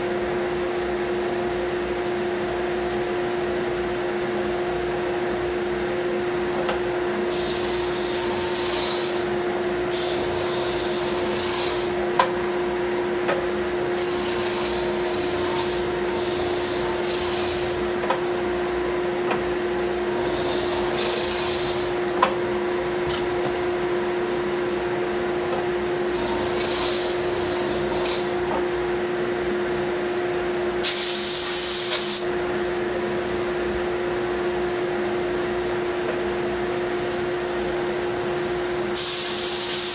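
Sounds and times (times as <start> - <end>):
dust collector humming: 0.0 - 39.9
wood sanding hiss: 7.3 - 9.3.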